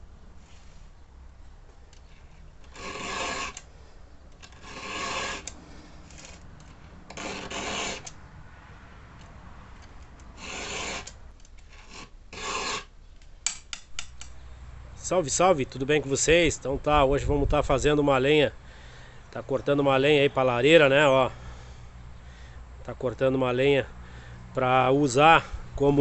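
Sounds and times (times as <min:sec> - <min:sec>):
file rasping on chainsaw chain: 0:02.6 - 0:03.7, 0:04.4 - 0:08.2, 0:10.3 - 0:11.2, 0:11.8 - 0:12.9.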